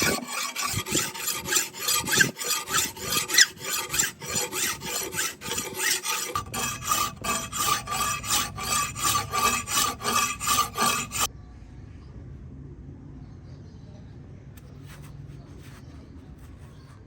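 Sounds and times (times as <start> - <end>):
hand file rasping on metal: 0.0 - 11.3.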